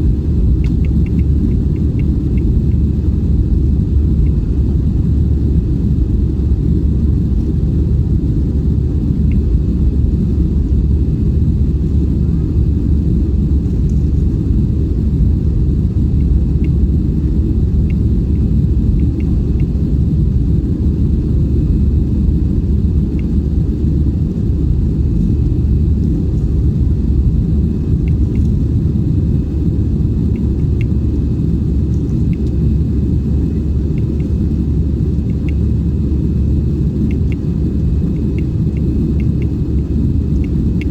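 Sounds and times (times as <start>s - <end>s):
aircraft cabin engine rumble: 0.0s - 40.9s
faint ticks: 28.0s - 28.6s, 37.1s - 37.5s.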